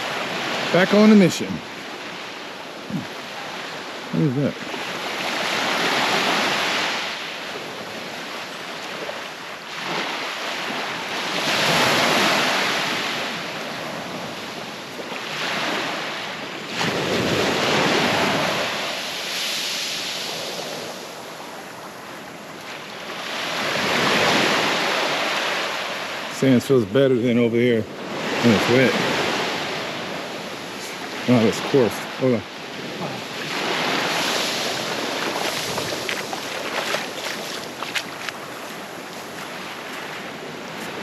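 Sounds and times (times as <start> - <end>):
surf breaking on a beach: 0.0 - 41.0
wind noise on microphone: 32.9 - 39.4.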